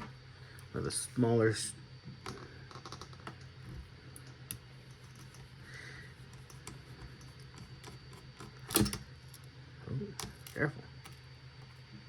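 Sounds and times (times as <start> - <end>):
screwdriver and metal parts clicking: 10.2 - 11.2.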